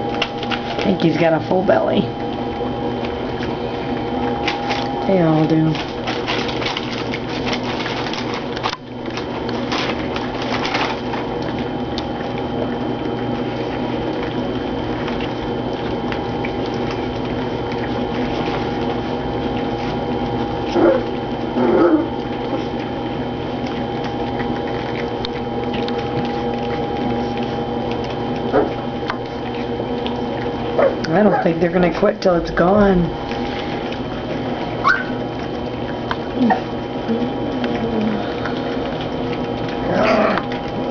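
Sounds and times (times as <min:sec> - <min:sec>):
puppies lapping and slurping food: 0:00.0 - 0:40.9
steady hum: 0:00.0 - 0:40.9
puppy whines: 0:20.7 - 0:22.2, 0:34.8 - 0:35.2, 0:39.8 - 0:40.6.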